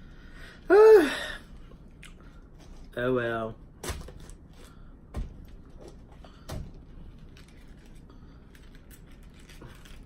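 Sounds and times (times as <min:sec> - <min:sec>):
crisp lettuce crunches: 0:07.1 - 0:10.0.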